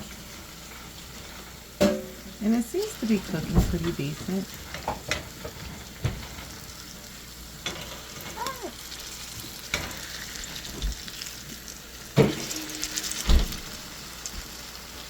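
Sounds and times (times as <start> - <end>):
batter sizzling in hot oil: 0.0 - 15.0
sharp knocks against pan: 1.8 - 2.2.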